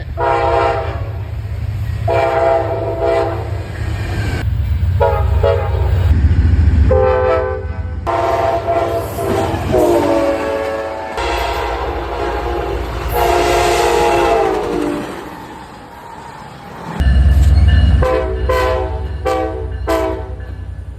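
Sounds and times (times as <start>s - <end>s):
locomotive air horn chords: 0.0s - 1.2s, 2.0s - 3.6s, 5.0s - 6.2s, 6.9s - 15.3s, 18.0s - 20.5s
passing train rumble: 0.0s - 20.9s.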